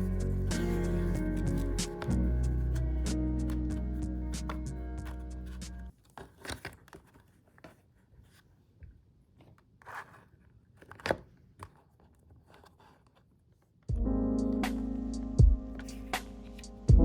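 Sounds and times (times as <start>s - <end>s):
soft guitar and piano music: 0.0s - 5.9s, 14.0s - 17.0s.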